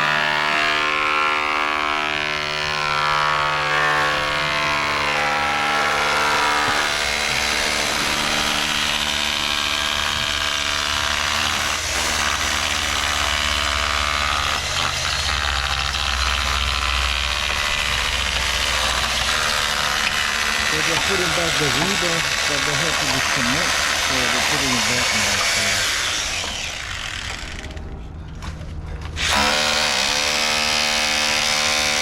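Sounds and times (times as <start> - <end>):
machinery whine: 24.1 - 30.2
engine-like rumble: 27.3 - 29.2.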